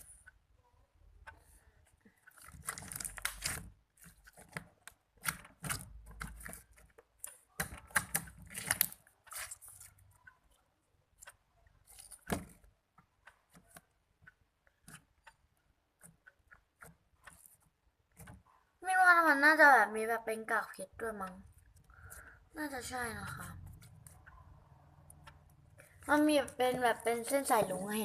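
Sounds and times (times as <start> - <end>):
slime crackling and popping: 2.3 - 9.9.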